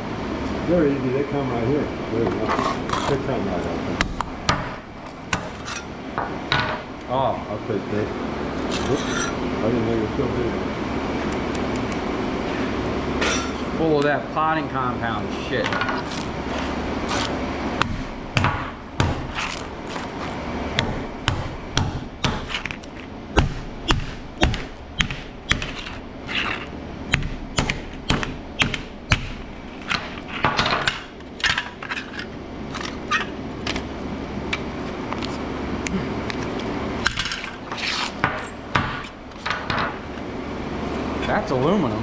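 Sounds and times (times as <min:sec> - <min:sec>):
metal parts clicking and scraping: 0:05.6 - 0:05.9, 0:08.7 - 0:09.4, 0:29.9 - 0:33.4.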